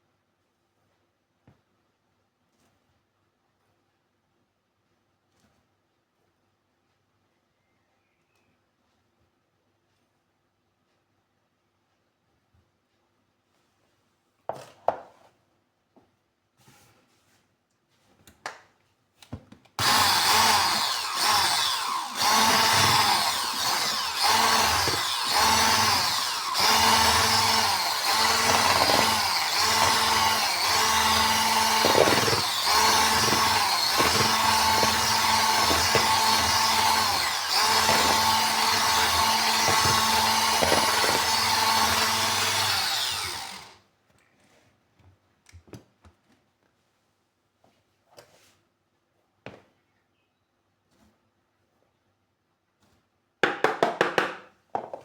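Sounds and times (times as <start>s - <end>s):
kitchen appliance motor humming: 19.8s - 43.8s.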